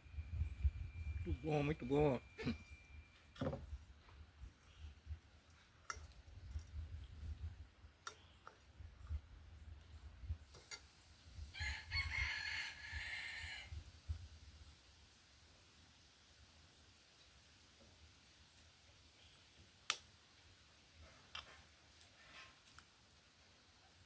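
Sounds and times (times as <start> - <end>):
rooster crowing: 11.5 - 13.8.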